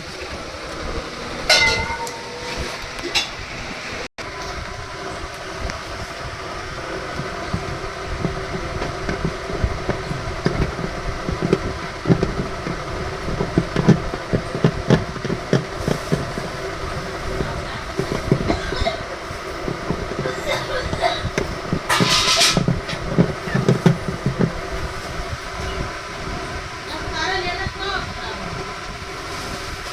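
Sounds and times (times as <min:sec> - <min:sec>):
washing machine humming: 0:00.0 - 0:29.9
knocking and rattling: 0:07.0 - 0:25.9.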